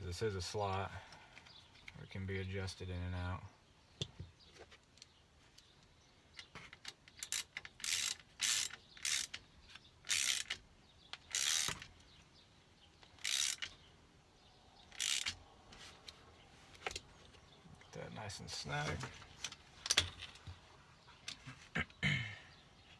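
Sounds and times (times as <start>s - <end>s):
ratchet wrench clicking: 7.2s - 9.4s, 10.0s - 10.6s, 11.2s - 11.9s, 13.2s - 13.8s, 14.9s - 15.4s.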